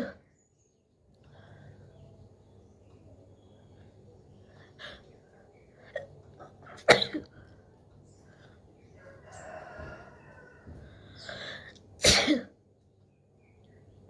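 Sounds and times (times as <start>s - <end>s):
breathy noise: 3.6s - 11.9s.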